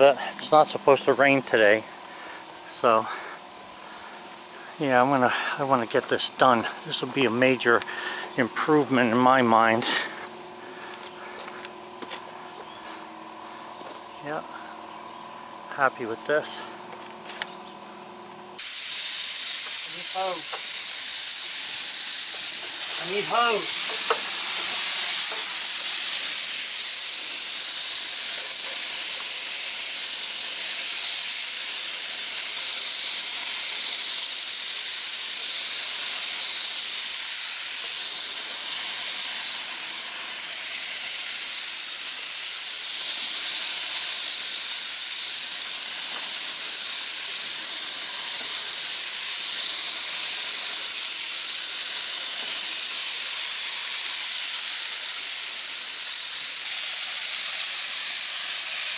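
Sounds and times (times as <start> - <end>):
spray gun hissing: 0.0 - 3.4, 18.6 - 58.9.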